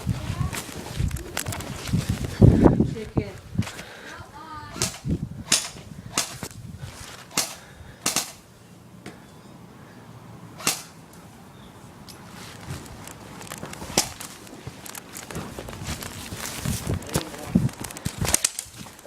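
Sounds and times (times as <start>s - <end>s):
airsoft gun shots: 4.8s - 6.5s, 7.3s - 8.5s, 10.6s - 11.0s.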